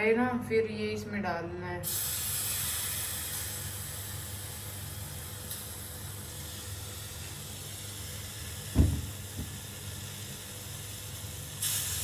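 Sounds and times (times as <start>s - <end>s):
gas burner hissing: 1.8s - 12.0s
thump: 8.7s - 9.6s.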